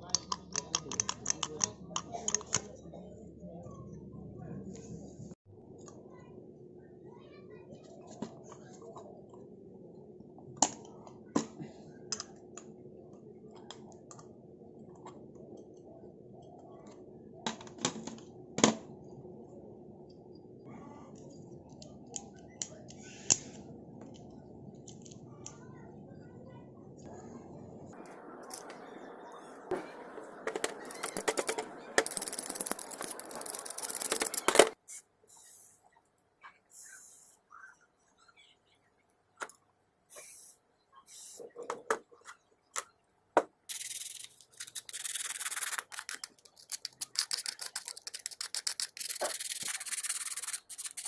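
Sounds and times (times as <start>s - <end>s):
small metal parts clicking: 30.7s - 34.8s, 43.7s - 51.0s.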